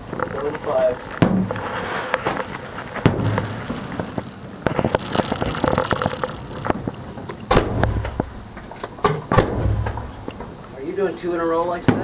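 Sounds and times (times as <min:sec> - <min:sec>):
fireworks crackling pops: 0:00.0 - 0:10.8
deep firework boom: 0:03.0 - 0:03.8, 0:07.5 - 0:08.5, 0:09.3 - 0:10.2.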